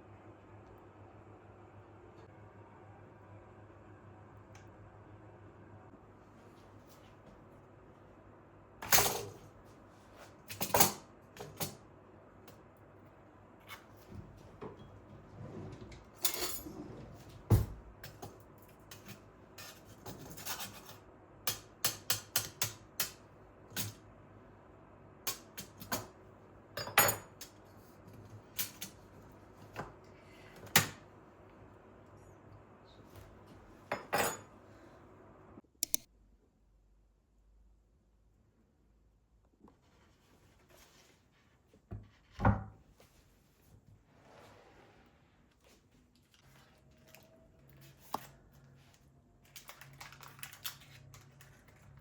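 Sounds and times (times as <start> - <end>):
small clicks: 35.8 - 36.1.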